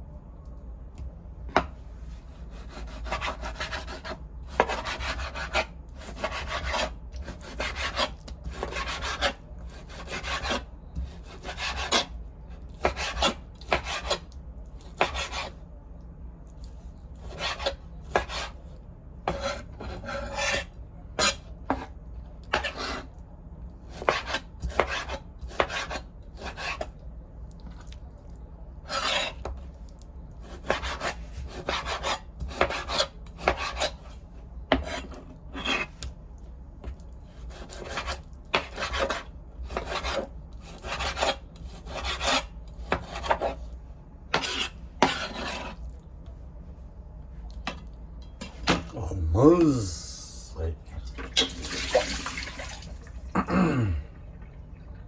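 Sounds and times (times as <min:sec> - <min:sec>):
steady low hum: 0:00.0 - 0:09.8, 0:42.5 - 0:55.0
kitchen utensil scraping and cutting: 0:02.3 - 0:15.6, 0:19.3 - 0:23.1, 0:28.9 - 0:29.5, 0:30.5 - 0:36.0, 0:37.3 - 0:43.7, 0:44.3 - 0:45.9.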